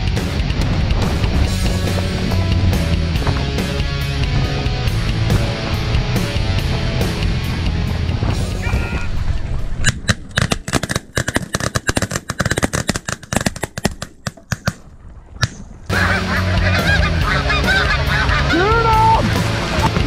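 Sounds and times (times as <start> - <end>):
low rumble: 0.0 - 10.6
geese honking and yelping: 15.9 - 20.0.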